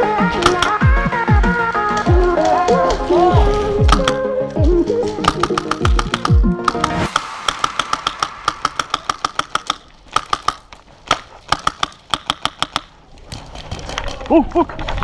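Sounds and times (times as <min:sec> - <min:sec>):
airsoft gun firing bursts: 0:00.2 - 0:02.9, 0:05.2 - 0:13.0.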